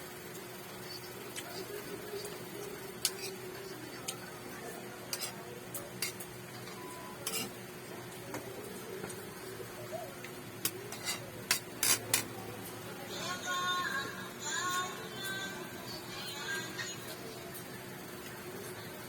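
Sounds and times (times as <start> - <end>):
cutlery clinking against a dish: 3.0 - 3.4, 5.1 - 7.6, 10.6 - 12.4.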